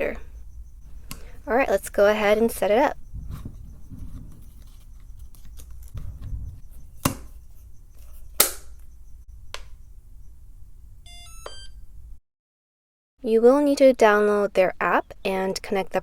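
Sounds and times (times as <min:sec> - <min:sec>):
short electronic beeps: 0:02.3 - 0:10.4, 0:11.1 - 0:11.8
sharp plastic clicks: 0:08.3 - 0:08.9.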